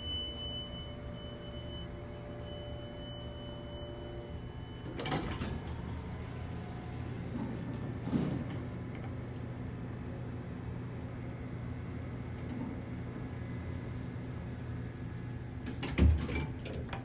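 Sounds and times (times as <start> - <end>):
elevator chime: 0.0 - 6.3
elevator low hum: 0.0 - 17.0
elevator doors sliding: 3.5 - 8.6.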